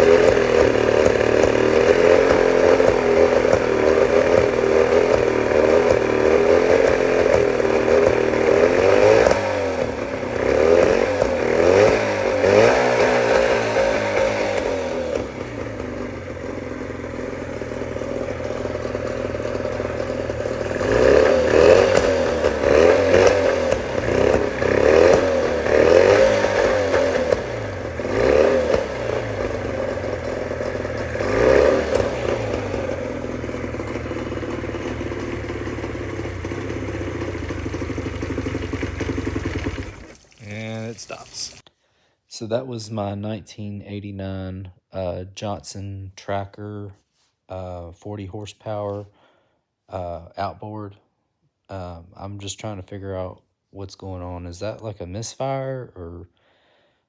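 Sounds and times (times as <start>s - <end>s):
outboard motor running unevenly: 0.0s - 41.4s.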